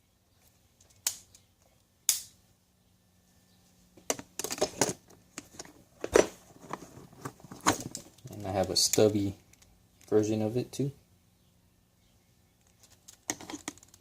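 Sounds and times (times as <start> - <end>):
hand tools clicking and clattering: 12.8 - 14.0.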